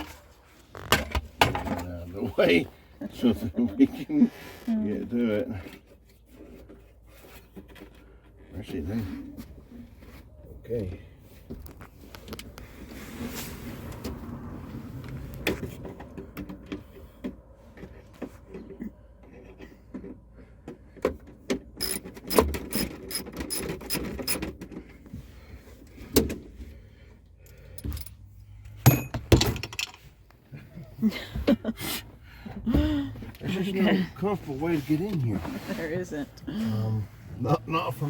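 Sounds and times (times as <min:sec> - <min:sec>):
hand tools and metal parts clinking: 0:21.1 - 0:25.1, 0:27.4 - 0:30.4.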